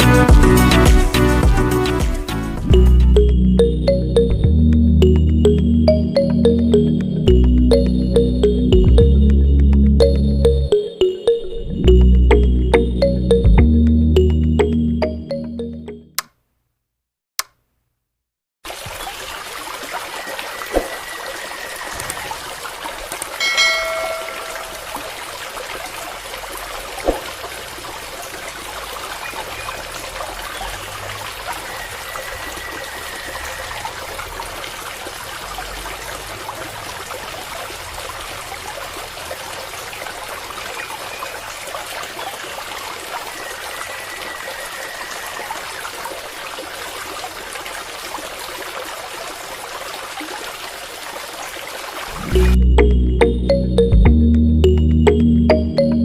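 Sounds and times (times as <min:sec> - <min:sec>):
sharp click: 0:17.4 - 0:17.6
water trickling: 0:18.6 - 0:53.9.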